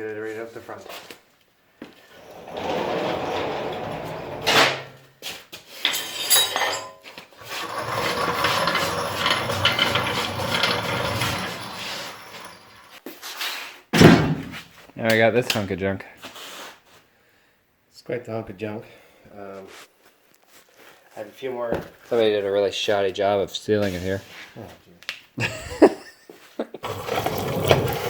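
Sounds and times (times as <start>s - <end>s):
scraping and rolling: 2.1s - 5.0s, 5.9s - 13.0s, 26.8s - 28.0s.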